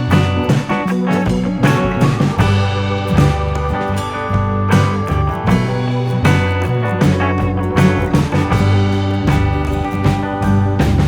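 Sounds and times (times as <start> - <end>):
guitar-led band music: 0.0 - 11.0.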